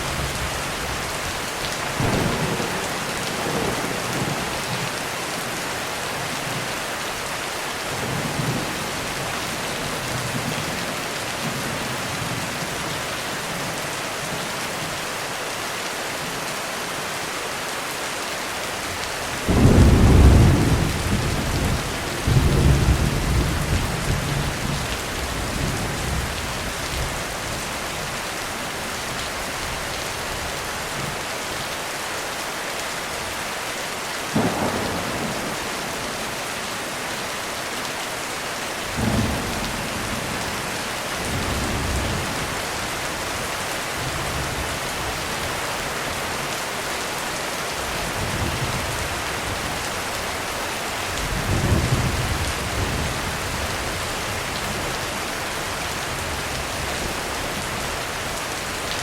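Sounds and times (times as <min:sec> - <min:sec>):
heavy rain on a roof: 0:00.0 - 0:59.0
thunder: 0:01.9 - 0:04.9, 0:34.4 - 0:36.4.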